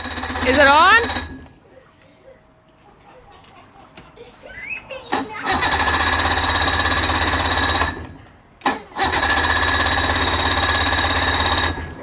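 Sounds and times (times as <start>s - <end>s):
electric starter cranking outboard motor: 0.0s - 1.6s, 5.1s - 12.0s.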